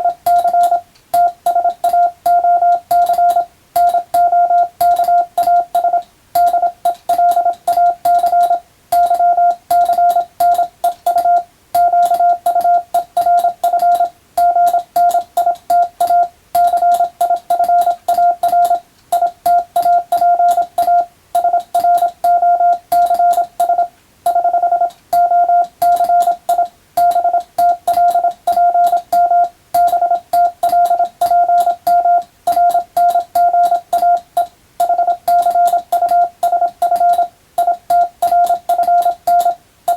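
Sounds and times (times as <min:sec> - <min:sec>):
telegraph key clicks: 0:00.0 - 0:23.8, 0:25.6 - 0:39.9
morse code tone: 0:00.0 - 0:39.9.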